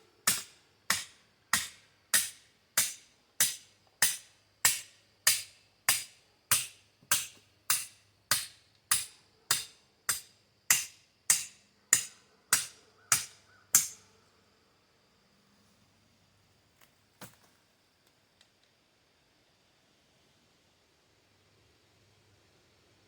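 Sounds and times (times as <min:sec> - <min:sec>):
hatchet knocking on sword spine: 0:00.3 - 0:14.0.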